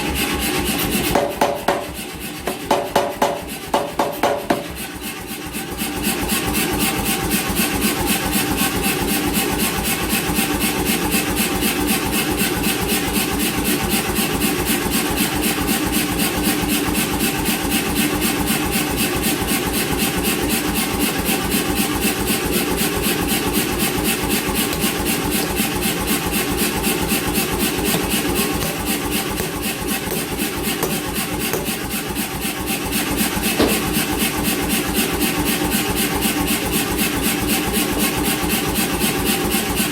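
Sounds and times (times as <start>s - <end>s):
motor and compressor hum: 0.0s - 39.9s
power hammer blows: 22.3s - 34.8s.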